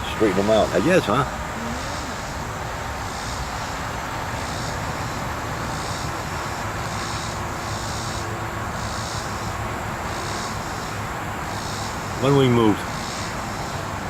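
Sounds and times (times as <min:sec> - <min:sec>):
cicadas buzzing: 0:00.0 - 0:14.0.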